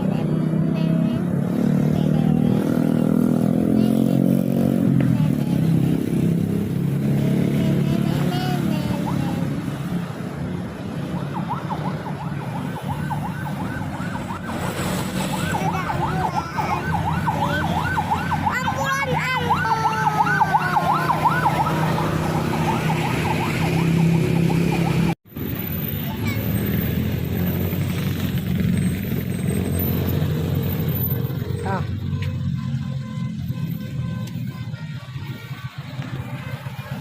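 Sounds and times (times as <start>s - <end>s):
bus horn warbling tones: 32.1s - 37.0s.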